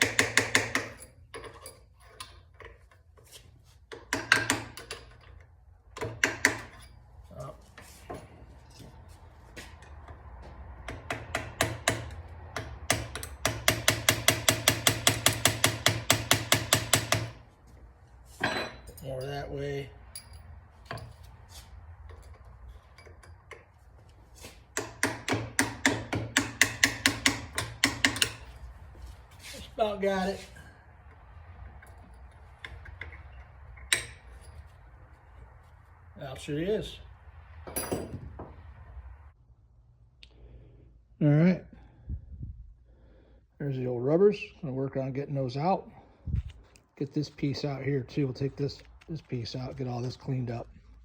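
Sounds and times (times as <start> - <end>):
hammer striking a metal punch: 0.0 - 1.1, 10.9 - 17.4, 24.8 - 28.4.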